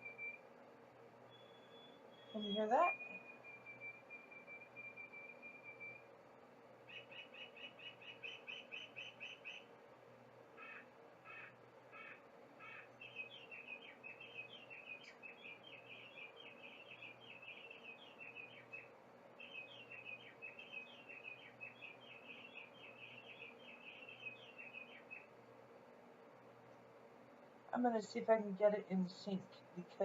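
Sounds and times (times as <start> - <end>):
recorded songbird twittering: 1.3 - 6.1, 6.8 - 9.7, 10.6 - 25.3.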